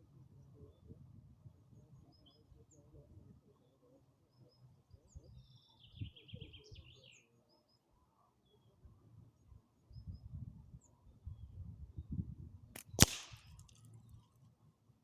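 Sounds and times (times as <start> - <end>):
faint bird chirps: 0.3 - 12.2
songbird trill: 1.6 - 12.2.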